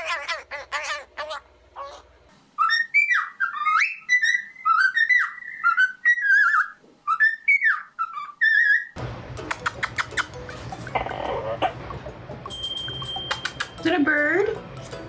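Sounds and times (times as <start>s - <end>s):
pet bird whistling melodic phrases: 2.6s - 10.4s, 12.5s - 13.8s.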